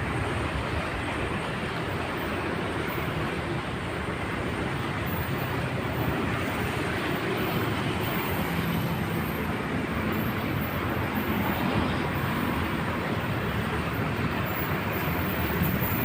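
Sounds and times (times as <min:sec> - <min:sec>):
passing train rumbling: 0:00.0 - 0:16.0.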